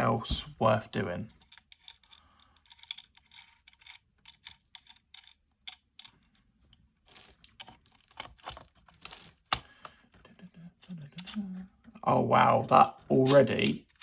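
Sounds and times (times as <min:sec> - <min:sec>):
metal clamp clicks and clinks: 0:01.4 - 0:06.2, 0:13.2 - 0:14.0.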